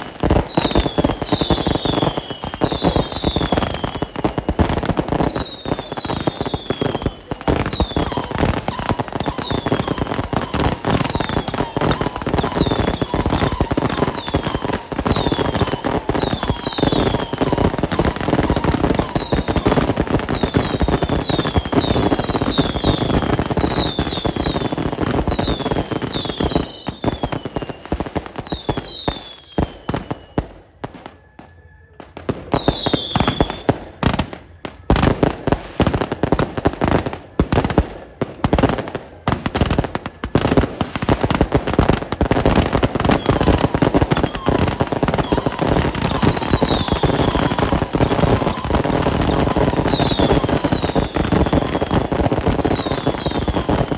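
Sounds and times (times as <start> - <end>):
falling firework whistles: 0.0 - 53.9
fireworks crackling: 0.0 - 53.9.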